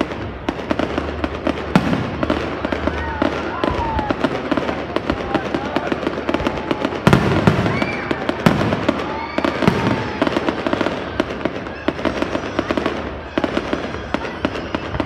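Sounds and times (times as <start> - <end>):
fireworks crackling and banging: 0.0 - 15.0
loud firework booms: 0.0 - 15.0.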